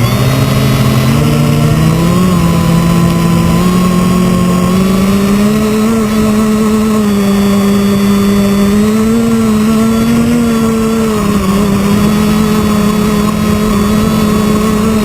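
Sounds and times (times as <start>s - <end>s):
quadcopter propellers buzzing: 0.0s - 15.0s.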